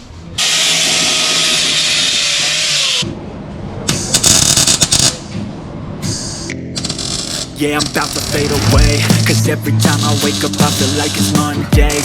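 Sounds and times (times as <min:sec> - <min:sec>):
power tool whirring hiss: 0:00.4 - 0:03.0
sharp rattling bursts: 0:06.8 - 0:12.0.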